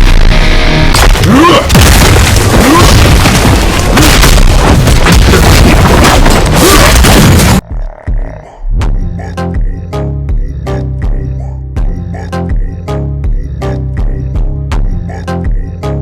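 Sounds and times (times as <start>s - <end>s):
music: 0.0s - 1.7s, 7.7s - 16.0s
distorted boom and explosion effects: 0.0s - 7.7s.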